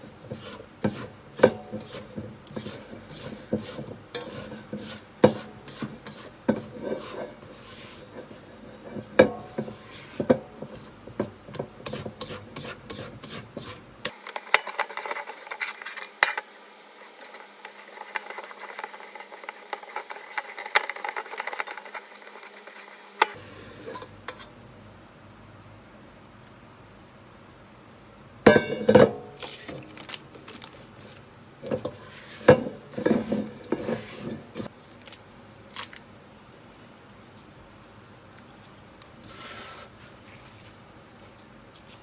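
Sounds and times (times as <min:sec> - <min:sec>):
kitchen utensil scraping: 0:00.0 - 0:24.5, 0:28.5 - 0:30.1, 0:31.6 - 0:34.7, 0:39.2 - 0:40.5.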